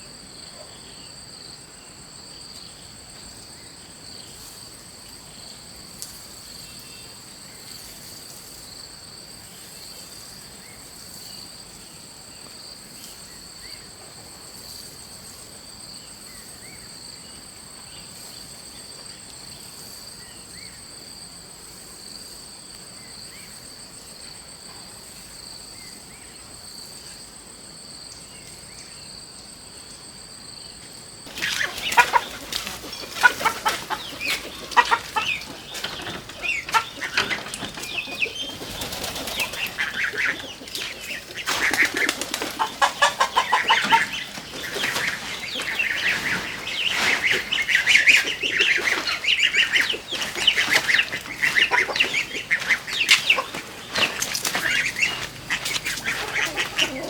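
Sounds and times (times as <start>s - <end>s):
faint insect chirps: 0.0s - 57.0s
insect chorus: 0.0s - 57.0s
chickens clucking: 31.3s - 57.0s.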